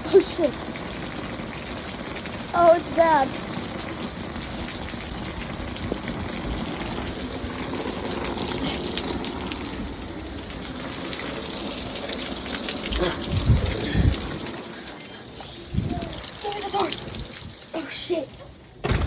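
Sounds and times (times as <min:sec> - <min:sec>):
heavy rain: 0:00.0 - 0:19.0
wind: 0:00.0 - 0:19.0
deep thumps: 0:18.8 - 0:19.0.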